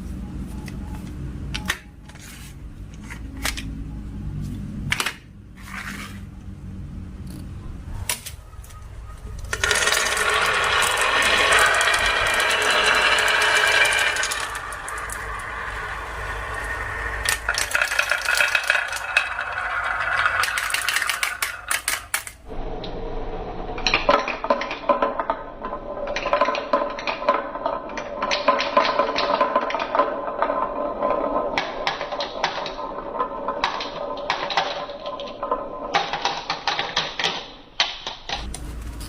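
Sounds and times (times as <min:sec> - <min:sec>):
marbles clattering down marble run: 0:09.4 - 0:22.5, 0:23.8 - 0:38.5.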